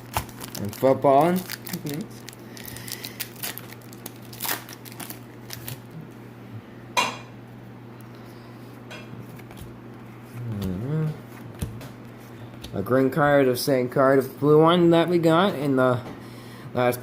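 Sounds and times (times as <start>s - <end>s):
trading cards rustling: 0.0s - 5.9s
steady low hum: 0.0s - 17.0s.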